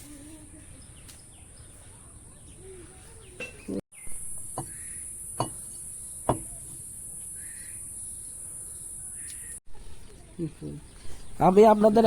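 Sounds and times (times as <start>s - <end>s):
crickets chirring: 4.0s - 9.6s.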